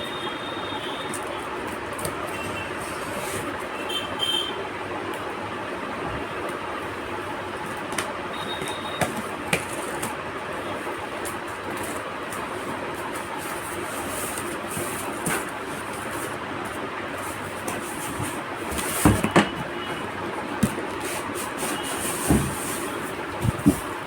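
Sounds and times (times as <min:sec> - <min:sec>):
clicks and knocks of computer case: 0:17.7 - 0:21.0.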